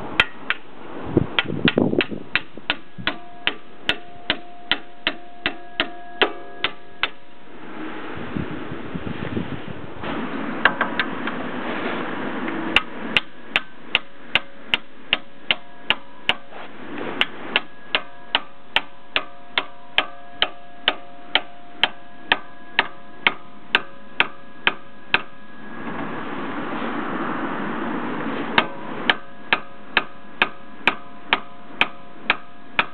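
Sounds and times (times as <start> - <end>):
hammer ringing on steel: 1.7 - 7.3, 12.8 - 16.5, 17.2 - 25.6, 28.6 - 32.9.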